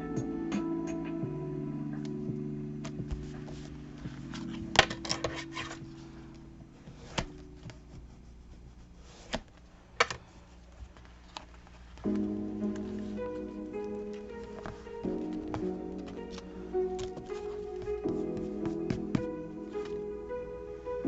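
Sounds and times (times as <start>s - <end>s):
background guitar music: 0.0s - 6.8s, 12.0s - 21.0s
paper rustling: 2.8s - 20.2s.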